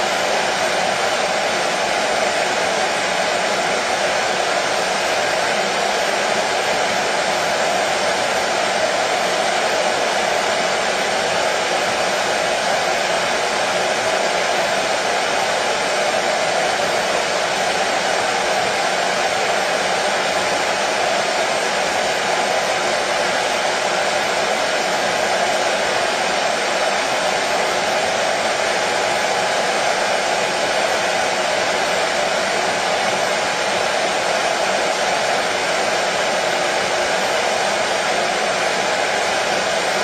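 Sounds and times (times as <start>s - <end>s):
hair dryer running: 0.0s - 40.0s.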